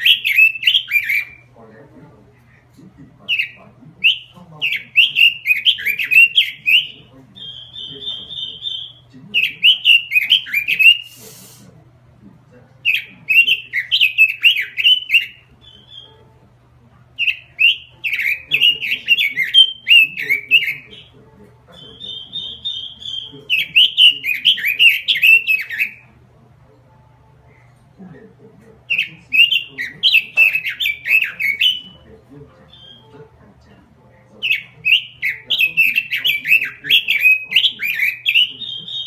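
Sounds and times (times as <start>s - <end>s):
bird warbling song: 0.0s - 11.5s, 12.8s - 16.4s, 17.1s - 39.0s
high even bird notes: 0.0s - 11.8s, 12.6s - 39.0s.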